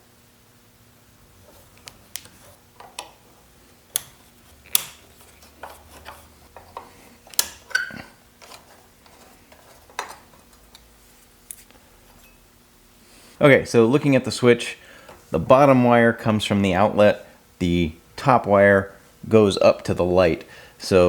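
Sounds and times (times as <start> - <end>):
screwdriver and screws clicking: 3.9 - 9.2.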